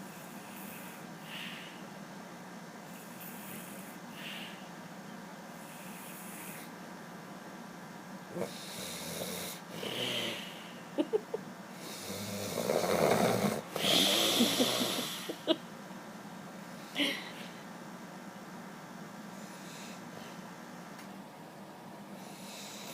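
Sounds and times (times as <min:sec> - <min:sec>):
man snoring: 0:08.3 - 0:10.6, 0:11.8 - 0:15.4.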